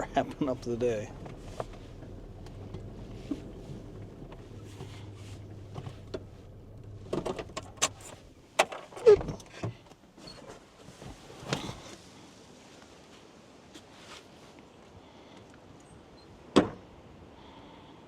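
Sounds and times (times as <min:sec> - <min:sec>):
vehicle engine idling: 0:00.0 - 0:08.5
sharp clicks and clunks: 0:00.1 - 0:09.8.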